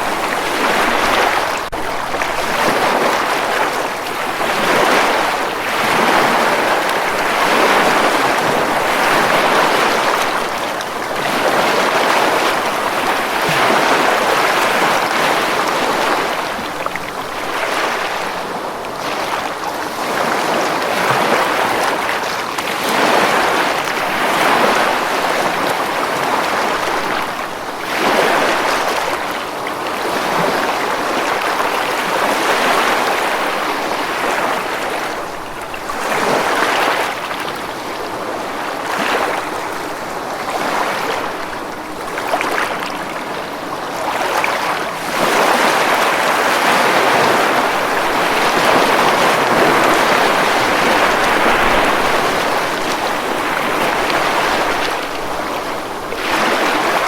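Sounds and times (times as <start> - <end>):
ocean waves breaking on beach: 0.0 - 57.0.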